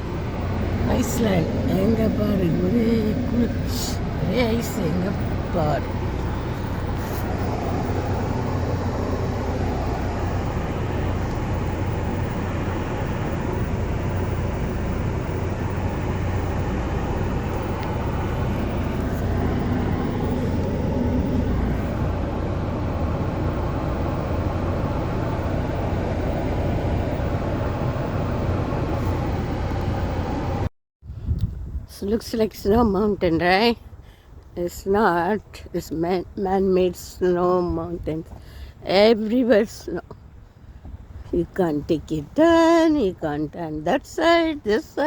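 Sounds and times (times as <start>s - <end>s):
faint hum: 0.0s - 30.7s
low rumbling noise: 0.0s - 32.0s.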